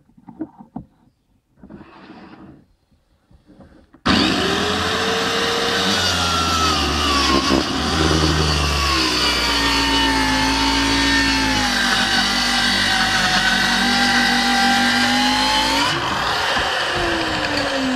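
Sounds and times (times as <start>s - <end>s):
plunge saw motor whine: 4.1s - 17.9s.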